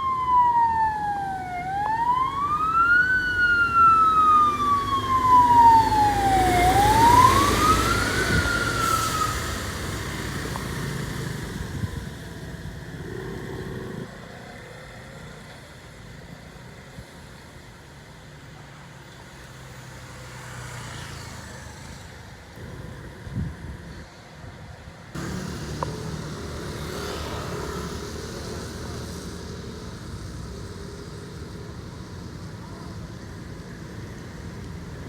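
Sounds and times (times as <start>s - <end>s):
electronic wail siren: 0.0s - 9.9s
traffic noise: 0.0s - 35.0s
vehicle engine rumble: 22.3s - 35.0s.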